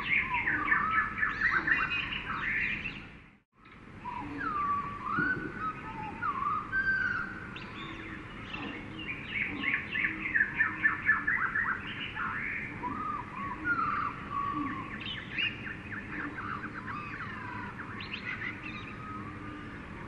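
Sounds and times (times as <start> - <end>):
whistled gliding bird notes: 0.0 - 3.0, 4.0 - 19.8
birds calling and chirping: 0.0 - 20.0
steady background hiss: 0.0 - 20.0.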